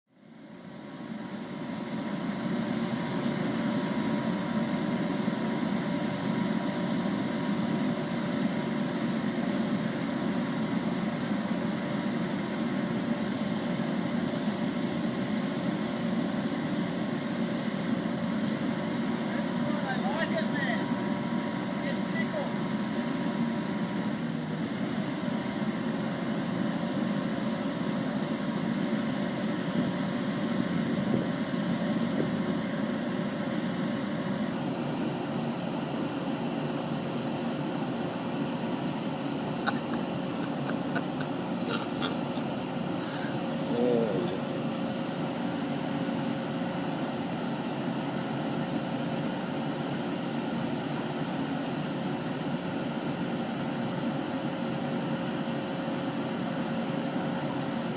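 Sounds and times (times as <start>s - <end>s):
excavator diesel engine running: 0.2s - 57.9s
short wavering squeak: 3.8s - 6.8s.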